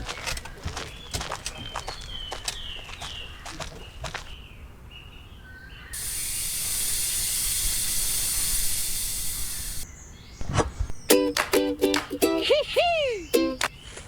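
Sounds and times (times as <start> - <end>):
steady high hiss: 6.0 - 9.8.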